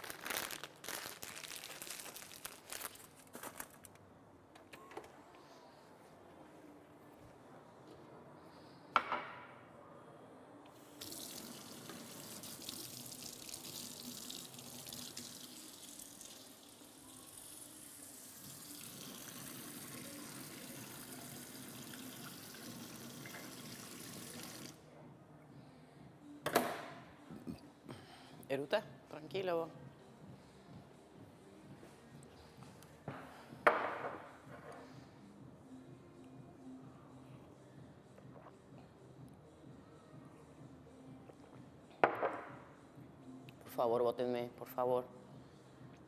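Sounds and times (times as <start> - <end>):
water running from a tap: 11.0 - 24.7.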